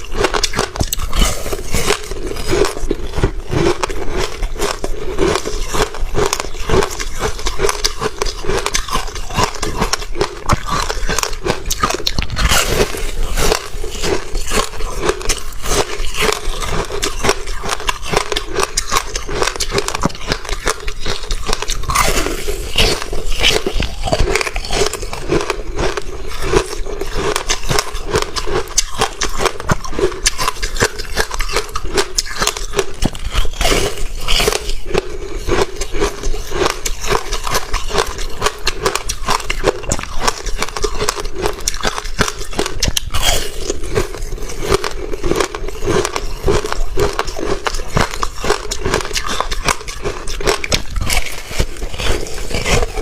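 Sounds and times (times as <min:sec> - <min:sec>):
crunching and chewing ice: 0:00.0 - 0:53.0.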